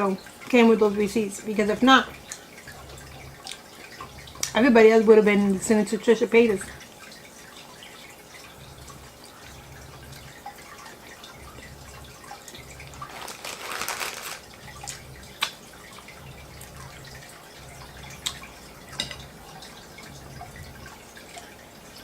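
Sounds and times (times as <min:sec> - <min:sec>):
wet chewing: 0:13.0 - 0:16.8.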